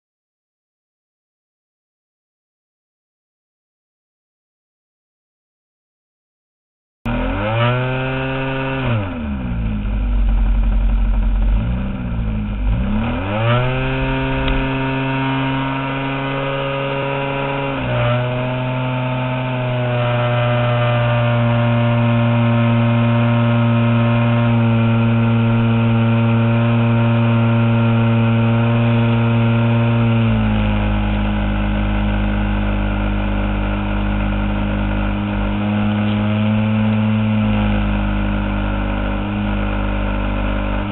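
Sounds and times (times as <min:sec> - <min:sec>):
model airplane engine running: 0:07.1 - 0:40.9.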